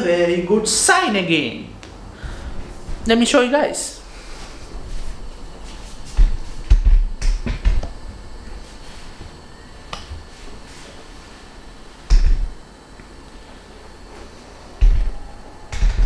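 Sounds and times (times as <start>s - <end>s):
handling knocks and thumps: 12.1s - 12.6s, 14.8s - 16.0s.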